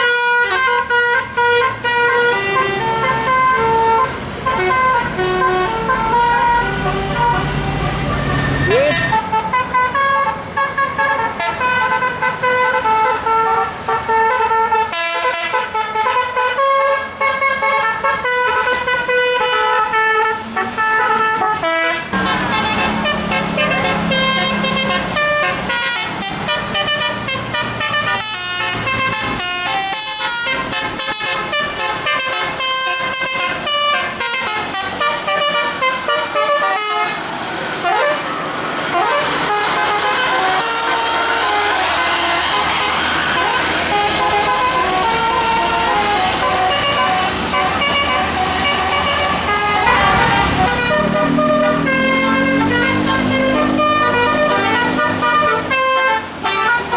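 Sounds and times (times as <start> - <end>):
musical air horn melody: 0.0 - 56.9.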